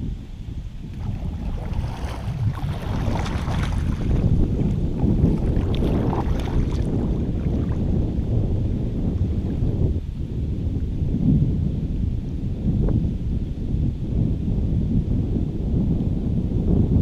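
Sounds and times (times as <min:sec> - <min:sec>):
wind buffeting microphone: 0:00.0 - 0:17.0
water splashing against kayak: 0:00.8 - 0:09.7.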